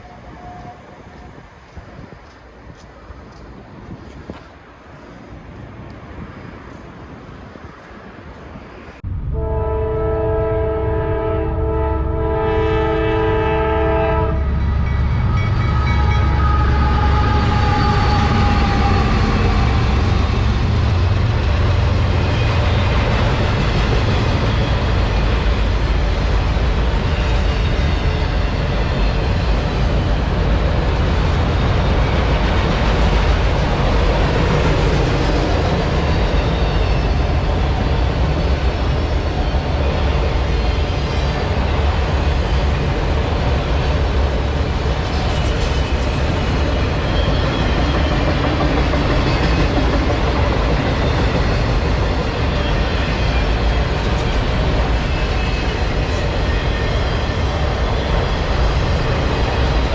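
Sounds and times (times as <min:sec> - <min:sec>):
freight train rumbling past: 0:00.0 - 0:59.9
locomotive horn: 0:09.3 - 0:14.6.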